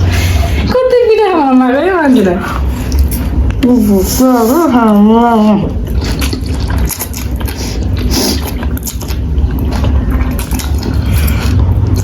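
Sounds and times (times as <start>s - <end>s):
low rumble: 0.0s - 12.0s
noodles being slurped and chewed: 5.7s - 12.0s.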